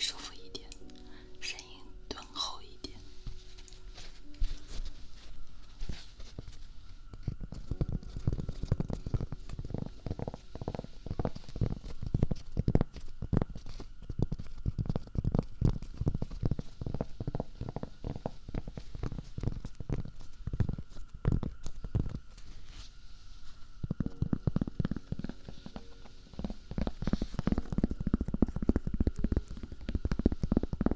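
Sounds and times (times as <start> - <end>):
soft taps and pops: 2.9 - 30.9.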